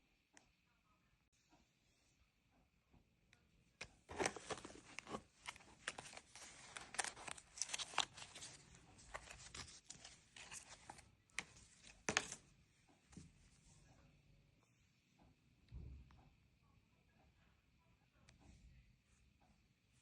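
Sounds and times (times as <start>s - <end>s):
packaging tearing and crinkling: 4.1s - 9.7s.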